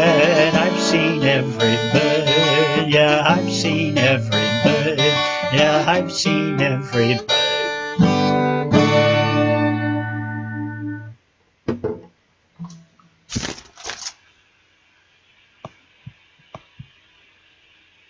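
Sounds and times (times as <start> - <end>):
acoustic guitar strummed chord: 0.0 - 11.1.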